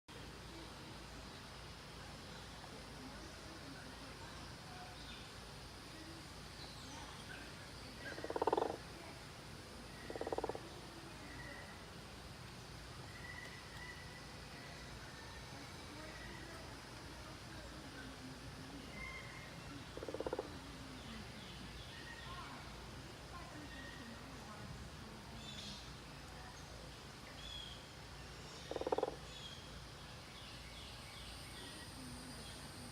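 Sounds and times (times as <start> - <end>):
birds chirping: 23.5 - 32.8.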